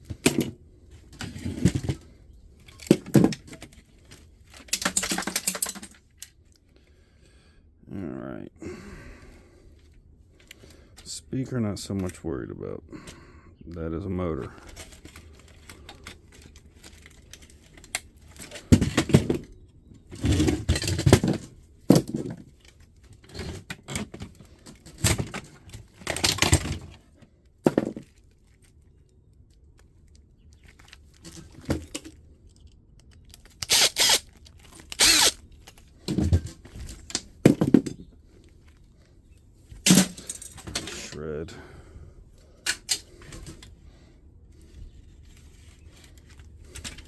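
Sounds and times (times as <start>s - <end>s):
plastic and metal parts clanking: 0.0s - 6.3s, 14.6s - 28.8s, 29.5s - 38.8s, 39.7s - 41.4s, 42.4s - 43.8s, 44.6s - 47.0s.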